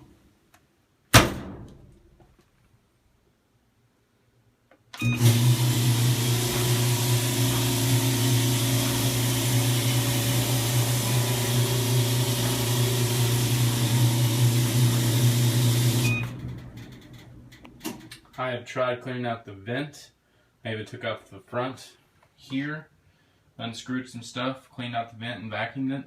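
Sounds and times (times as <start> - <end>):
clothes dryer running: 5.0 - 18.1.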